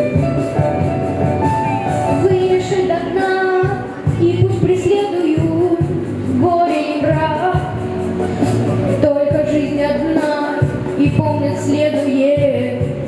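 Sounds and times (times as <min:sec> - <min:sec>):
backing track with drum beat: 0:00.0 - 0:13.0
boy singing: 0:02.1 - 0:07.8, 0:08.9 - 0:13.0.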